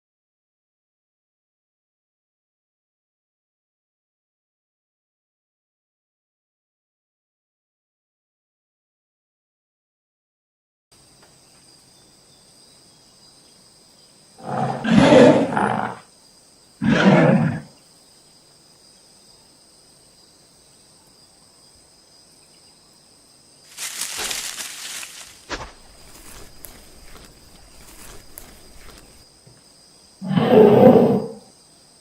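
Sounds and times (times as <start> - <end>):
animal roars: 14.4 - 16.1, 16.8 - 17.7, 30.2 - 31.5.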